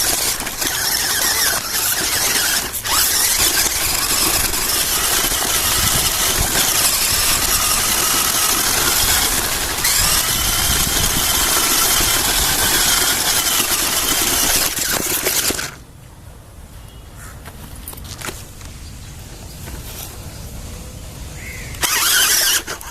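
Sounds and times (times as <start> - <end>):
toy car electric motor whining: 0.0 - 15.8, 21.7 - 22.9.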